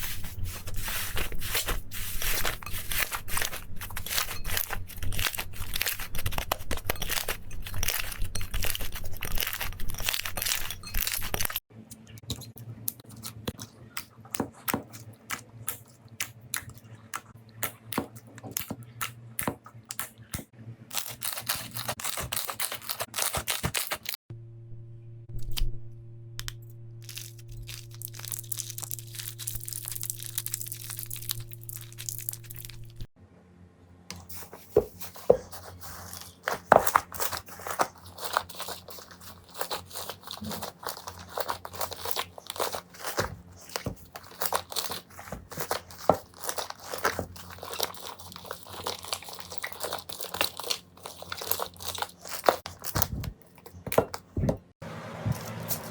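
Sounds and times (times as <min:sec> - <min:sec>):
slime squelching and crackling: 0:00.0 - 0:11.6, 0:20.9 - 0:24.2, 0:27.0 - 0:33.1, 0:34.3 - 0:53.8
steady low hum: 0:24.3 - 0:38.2.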